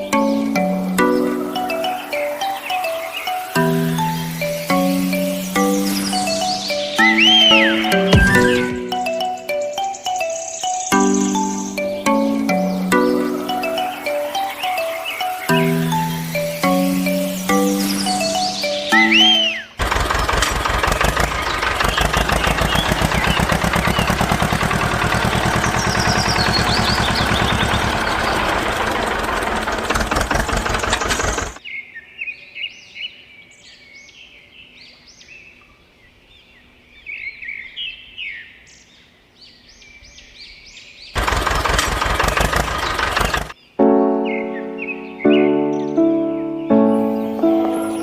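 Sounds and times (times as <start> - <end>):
bird chirps: 0.0 - 29.0, 42.4 - 48.0.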